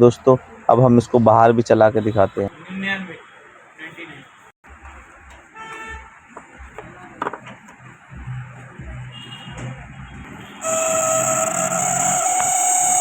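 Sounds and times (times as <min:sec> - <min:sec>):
fan motor humming and whining: 0:10.6 - 0:13.0.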